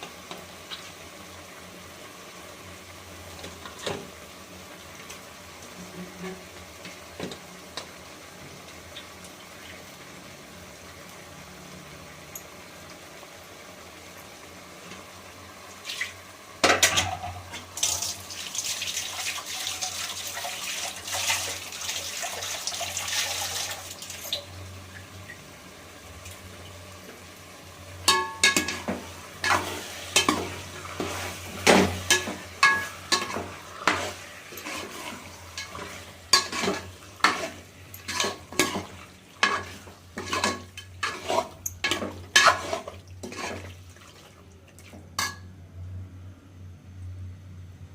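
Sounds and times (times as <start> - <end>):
clatter in a pan: 16.6 - 18.1, 28.0 - 43.7
utensil clinking against a pan: 28.1 - 29.6, 31.6 - 34.8.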